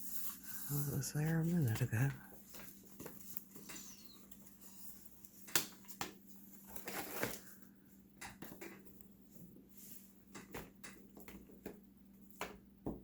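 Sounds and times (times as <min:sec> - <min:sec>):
paper rustling: 0:00.0 - 0:07.6
faint steady hum: 0:00.0 - 0:13.0.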